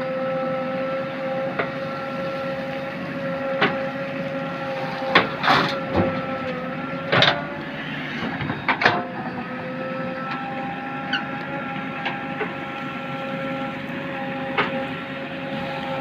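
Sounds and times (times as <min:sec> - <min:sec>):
backhoe loader engine whining: 0:00.0 - 0:16.0.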